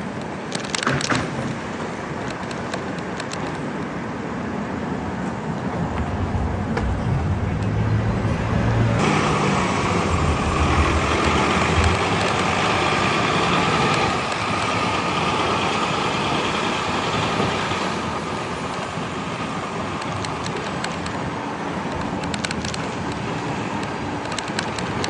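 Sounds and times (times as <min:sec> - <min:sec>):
vehicle engine running: 0:05.3 - 0:25.0.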